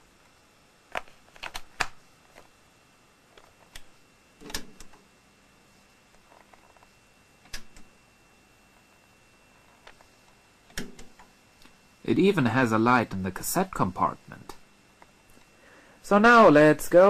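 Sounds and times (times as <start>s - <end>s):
cassette deck buttons clicking: 7.5s - 7.9s, 10.7s - 11.2s.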